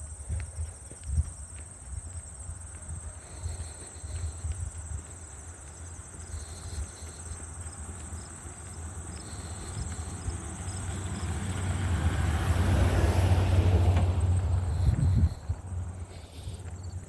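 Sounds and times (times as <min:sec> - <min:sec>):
insects trilling: 0:00.0 - 0:17.0
low rumble: 0:12.5 - 0:16.9.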